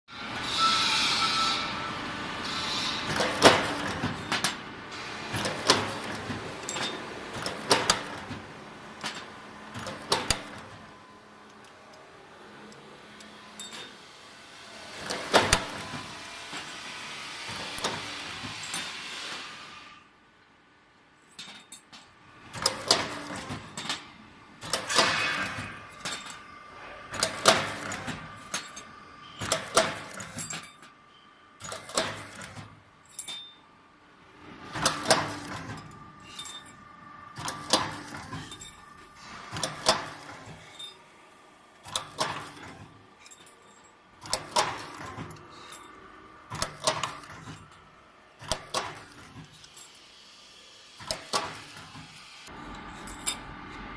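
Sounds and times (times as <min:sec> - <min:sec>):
machine metallic clanks: 0:02.7 - 0:04.7, 0:05.3 - 0:10.8, 0:13.2 - 0:14.1, 0:14.7 - 0:19.5, 0:21.3 - 0:33.7, 0:34.7 - 0:41.1, 0:41.8 - 0:50.0, 0:51.0 - 0:53.9
metallic ring: 0:13.6 - 0:14.0, 0:33.0 - 0:33.7, 0:35.8 - 0:36.9, 0:38.3 - 0:39.0, 0:40.6 - 0:41.0, 0:43.2 - 0:44.0, 0:45.5 - 0:46.1, 0:52.6 - 0:53.9.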